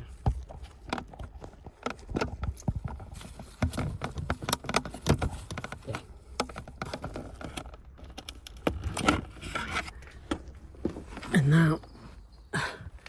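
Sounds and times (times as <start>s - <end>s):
hard plastic clicks and rattles: 0.3s - 10.6s.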